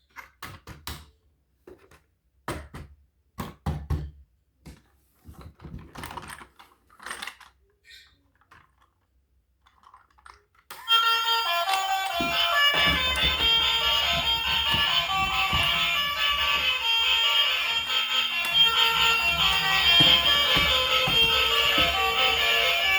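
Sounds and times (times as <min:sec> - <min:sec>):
toy box clicks and knocks: 0:09.7 - 0:22.9
loud music: 0:11.8 - 0:22.9.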